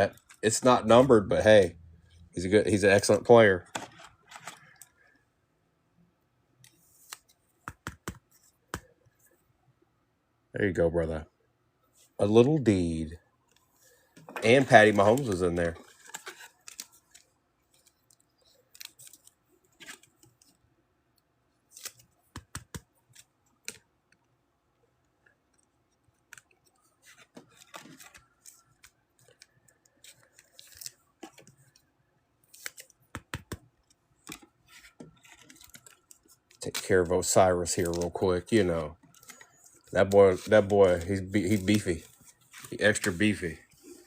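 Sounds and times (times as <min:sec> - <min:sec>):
handling trading cards: 0:00.0 - 0:05.3, 0:06.6 - 0:09.5, 0:13.4 - 0:44.0
light clicks taps and scrapes: 0:03.7 - 0:05.1.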